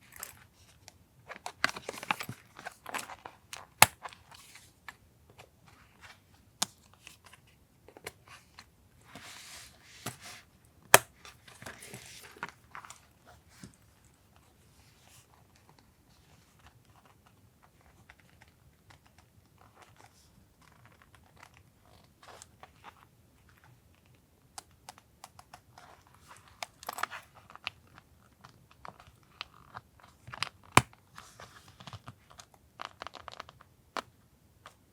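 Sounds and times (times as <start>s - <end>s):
paper rustling and crinkling: 11.3s - 14.0s.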